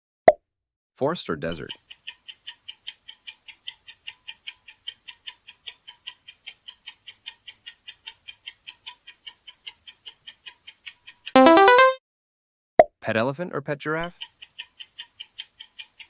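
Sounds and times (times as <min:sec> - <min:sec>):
clock ticking quickly: 0:01.5 - 0:12.0, 0:14.0 - 0:16.0.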